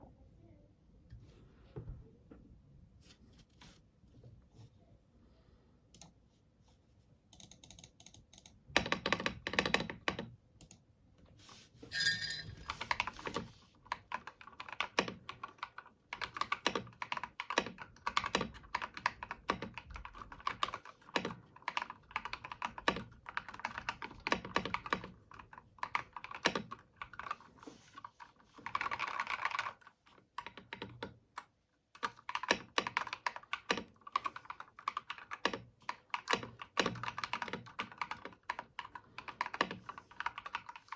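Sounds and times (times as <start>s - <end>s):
typing on mechanical keyboard: 7.3s - 10.8s, 12.7s - 40.9s.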